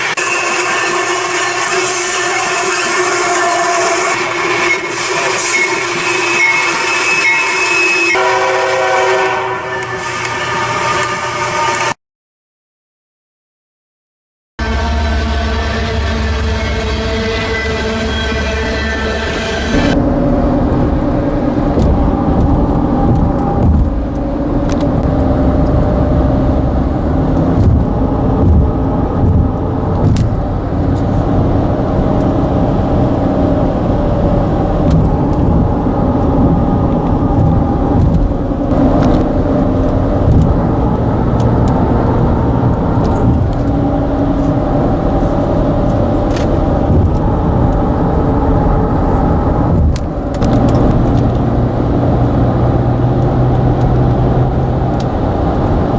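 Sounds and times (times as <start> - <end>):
bridge deck droning hum: 0.0 - 12.0, 14.6 - 55.9
traffic rumble: 14.6 - 55.9.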